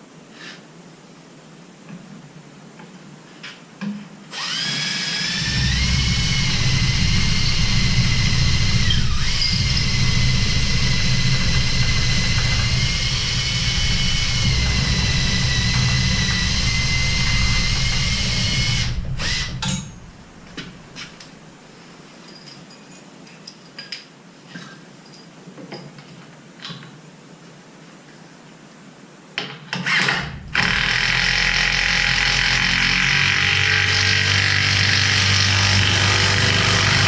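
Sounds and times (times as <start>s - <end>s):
power drill drilling into wood: 4.3s - 20.0s, 29.8s - 37.0s.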